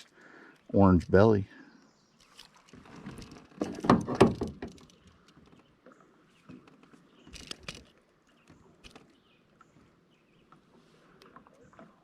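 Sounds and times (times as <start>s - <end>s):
light knocks and rustles on boat: 2.2s - 12.0s.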